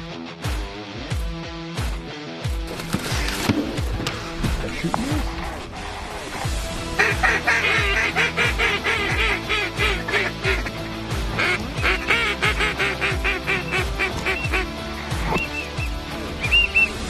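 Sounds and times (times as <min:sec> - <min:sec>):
background music with bass beat: 0:00.0 - 0:17.0
geese honking: 0:06.9 - 0:15.9.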